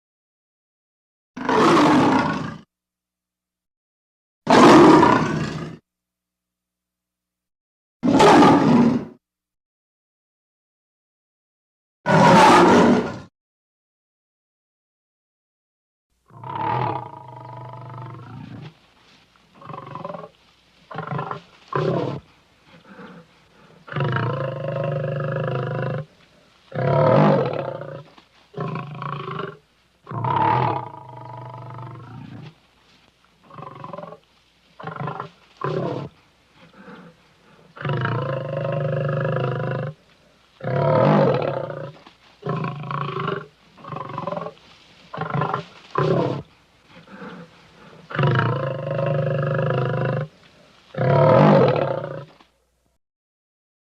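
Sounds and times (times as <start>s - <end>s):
lion roaring: 1.4s - 2.7s, 4.5s - 5.8s, 8.0s - 9.2s, 12.1s - 13.3s, 16.3s - 18.7s, 19.6s - 20.3s, 20.9s - 32.5s, 33.4s - 34.2s, 34.8s - 40.0s, 40.6s - 52.4s.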